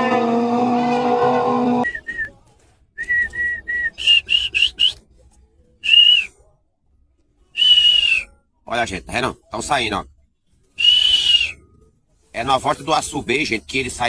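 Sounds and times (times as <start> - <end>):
loud pitched sound: 0.0 - 1.9
person whistling short notes: 1.7 - 2.4, 3.0 - 5.0, 5.8 - 6.4, 7.6 - 8.4, 10.8 - 11.8.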